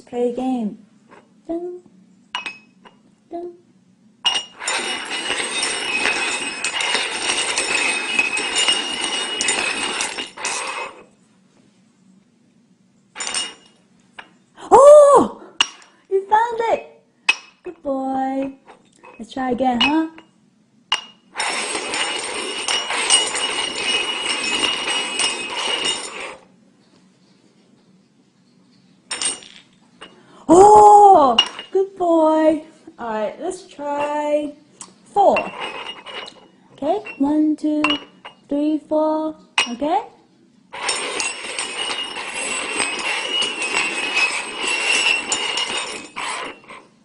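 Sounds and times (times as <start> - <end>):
cups scraping on a table: 4.3 - 11.1, 21.0 - 26.5, 31.4 - 31.8, 35.3 - 38.4, 40.8 - 47.0.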